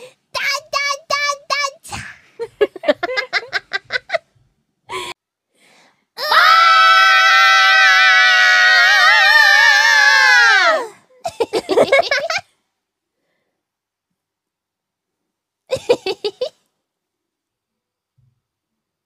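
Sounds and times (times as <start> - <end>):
young women giggling: 2.4 - 4.3
high-pitched scream: 6.2 - 11.0.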